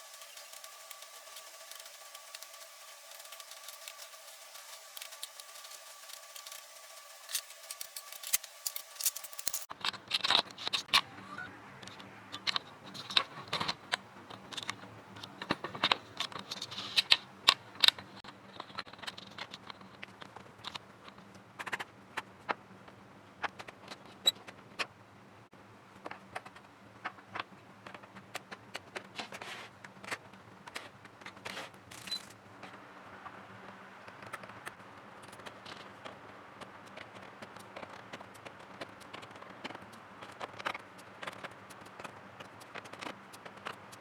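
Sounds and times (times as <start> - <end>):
faint steady hum: 0.0 - 21.6
plastic and metal parts clattering: 7.2 - 11.1, 11.8 - 20.8.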